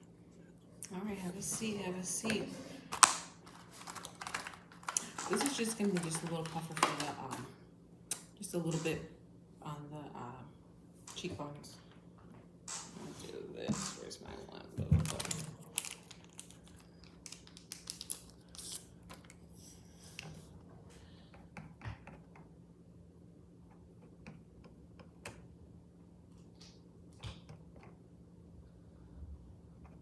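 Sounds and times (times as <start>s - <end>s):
makeup items clicking and tapping: 3.8s - 7.5s.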